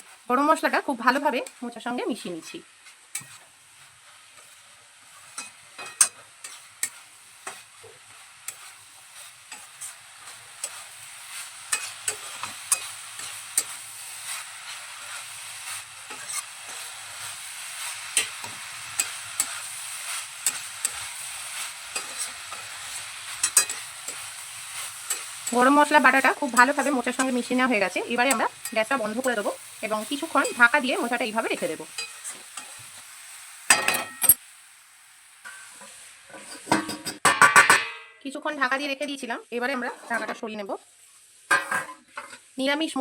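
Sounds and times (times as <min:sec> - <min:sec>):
soft sizzle in pan: 0:00.0 - 0:43.0
utensil scraping pan: 0:02.3 - 0:32.8, 0:35.4 - 0:37.7, 0:39.8 - 0:40.4.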